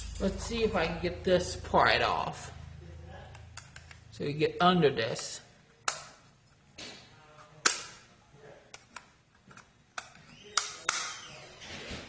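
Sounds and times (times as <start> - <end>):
sharp metallic clicks and snaps: 3.3 - 4.1, 5.8 - 6.2.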